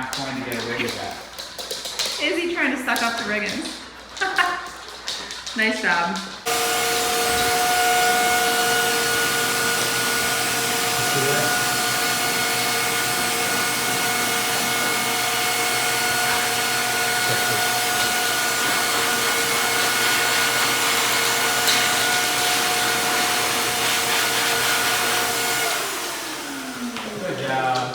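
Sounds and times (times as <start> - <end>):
blow dryer whining: 6.4 - 27.9.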